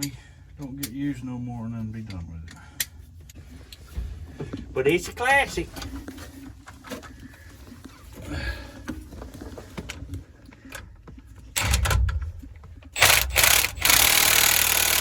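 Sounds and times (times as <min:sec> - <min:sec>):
impact wrench hammering: 0:13.0 - 0:15.0.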